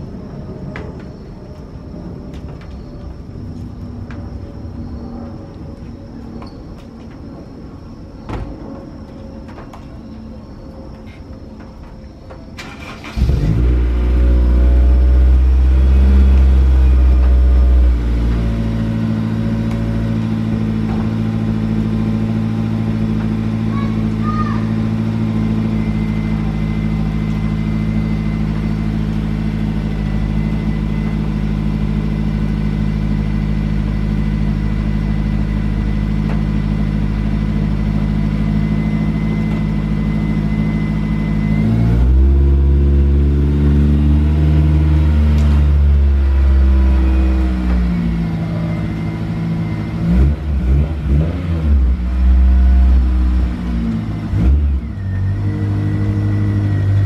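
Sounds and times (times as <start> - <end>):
car engine idling: 11.6 - 50.6
engine revving: 12.6 - 34.5, 35.2 - 57.0.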